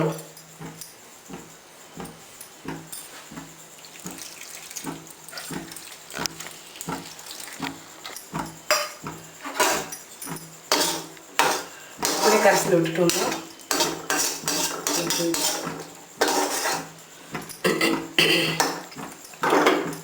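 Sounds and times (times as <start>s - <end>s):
liquid splashing into a pot: 3.8s - 8.1s.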